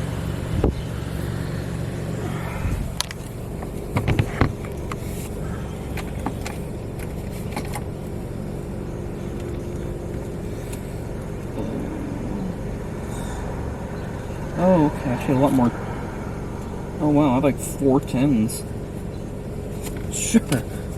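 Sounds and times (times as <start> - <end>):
car engine idling: 0.0 - 20.9
sharp clicks and knocks: 3.0 - 5.0.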